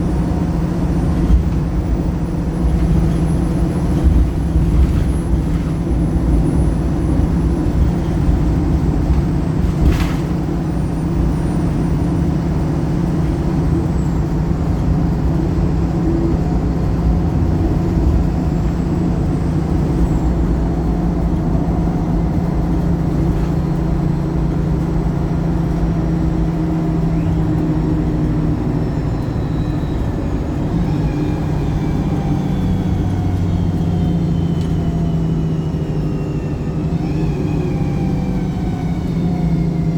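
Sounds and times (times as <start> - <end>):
bus engine running: 0.0 - 39.9.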